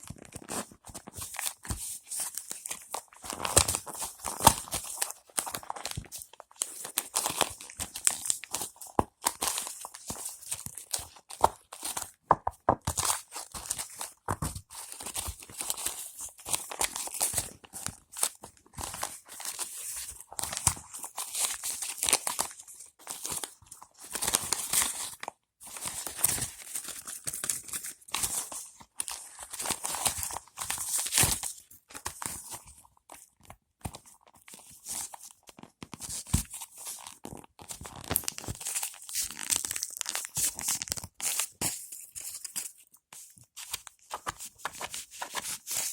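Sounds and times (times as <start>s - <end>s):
packaging tearing and crinkling: 36.1s - 42.7s.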